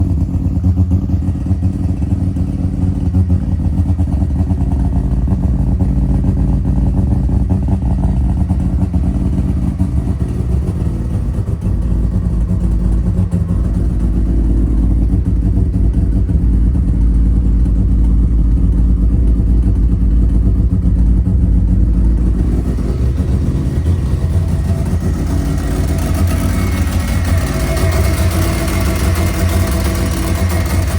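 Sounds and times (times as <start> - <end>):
rotary engine running: 21.9 - 30.9.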